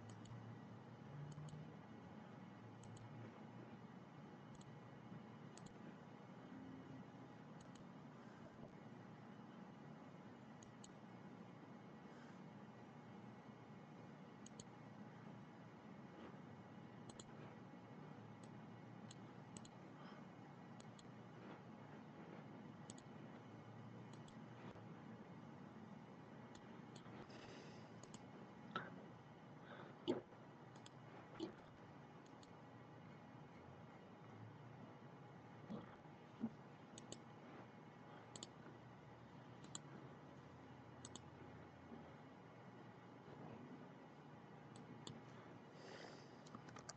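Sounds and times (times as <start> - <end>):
computer mouse clicking: 0.0 - 0.5, 1.2 - 1.7, 2.8 - 3.2, 4.4 - 4.9, 5.5 - 5.8, 7.5 - 8.0, 10.5 - 11.1, 14.3 - 14.8, 17.0 - 17.5, 18.3 - 19.8, 20.7 - 21.2, 22.8 - 23.2, 24.0 - 24.6, 26.4 - 27.2, 28.0 - 28.3, 30.0 - 32.6, 36.9 - 37.3, 38.2 - 38.7, 39.5 - 40.0, 40.9 - 41.4, 44.7 - 45.4, 46.4 - 46.9
faint room hiss: 0.0 - 46.9.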